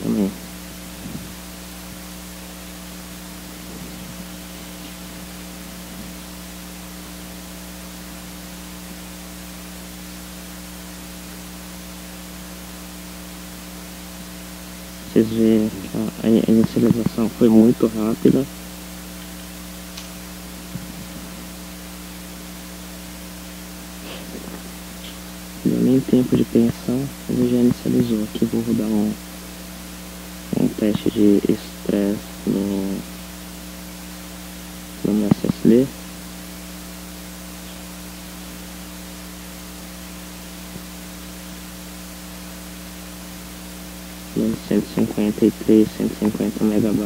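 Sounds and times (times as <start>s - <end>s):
background hiss: 0.0s - 47.0s
electrical hum: 0.0s - 47.0s.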